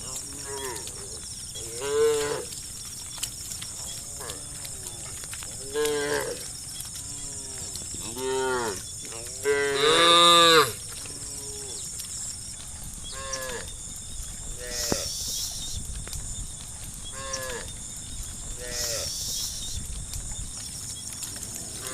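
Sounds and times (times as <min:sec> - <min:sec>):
cows mooing: 0:00.0 - 0:02.6, 0:03.7 - 0:11.9, 0:13.1 - 0:13.8, 0:14.4 - 0:15.2, 0:17.1 - 0:17.8, 0:18.4 - 0:19.4, 0:21.2 - 0:21.9.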